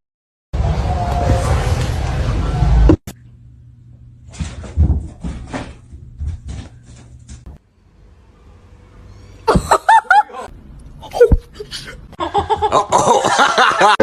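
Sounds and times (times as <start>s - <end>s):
people laughing: 9.5s - 10.5s, 11.1s - 14.0s.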